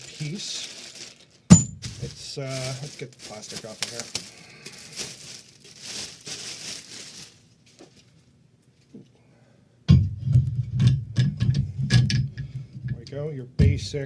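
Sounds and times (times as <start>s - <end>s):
man talking: 0.0s - 0.8s, 1.9s - 4.2s, 12.9s - 14.0s
plastic wrapping crinkling and tearing: 0.0s - 8.9s.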